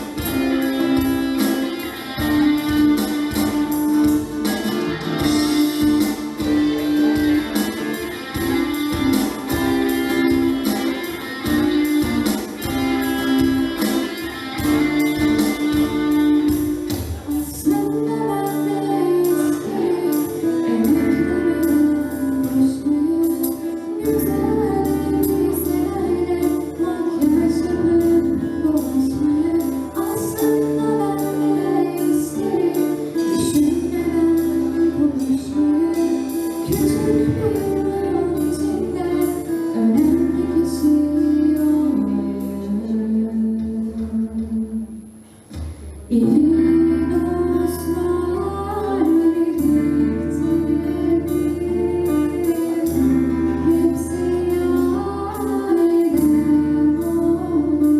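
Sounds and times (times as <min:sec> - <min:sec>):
percussion beat: 0:00.0 - 0:17.5
person singing: 0:00.0 - 0:45.0, 0:46.1 - 0:57.9
bass guitar: 0:00.0 - 0:57.9
strummed guitars: 0:00.0 - 0:57.9.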